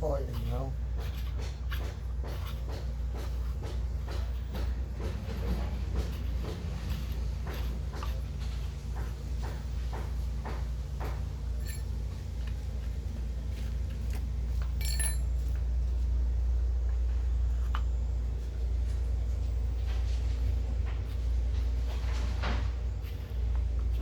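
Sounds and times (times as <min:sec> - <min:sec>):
steady low hum: 0:00.0 - 0:24.0
metal tools clinking: 0:11.5 - 0:12.2, 0:14.6 - 0:15.6.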